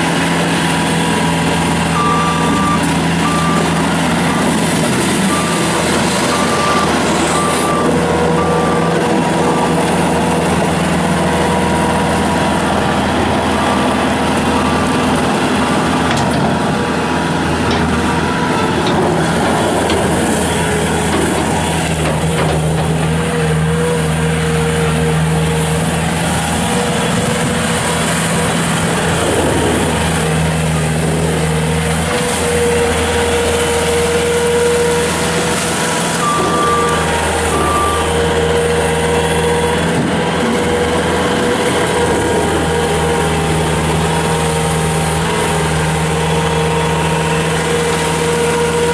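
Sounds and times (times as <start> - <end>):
diesel loader engine running: 0.0 - 48.9
backup alarm beeping: 2.0 - 9.8, 36.2 - 38.2.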